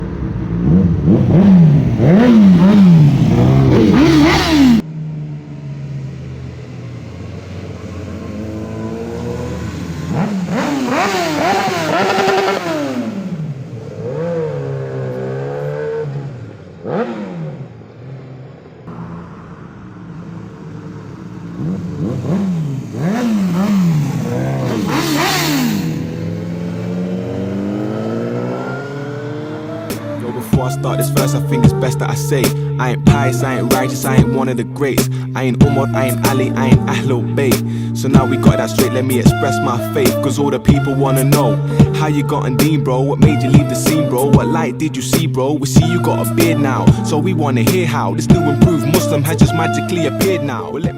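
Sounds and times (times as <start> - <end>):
motorcycle engine idling: 0.0 - 9.0, 16.4 - 26.7, 29.7 - 50.9
motorcycle engine revving: 0.0 - 50.9.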